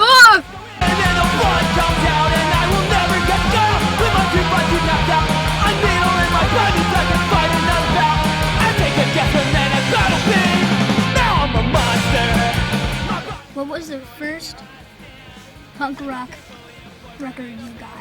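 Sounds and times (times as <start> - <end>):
drums: 0.0 - 18.0
electric guitar: 0.8 - 13.5
person singing: 0.8 - 18.0.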